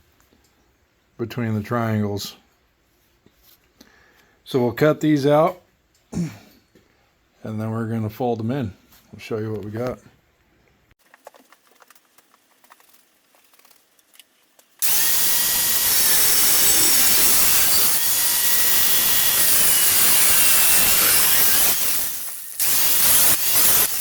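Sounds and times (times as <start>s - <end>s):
angle grinder cutting metal: 14.8s - 24.0s.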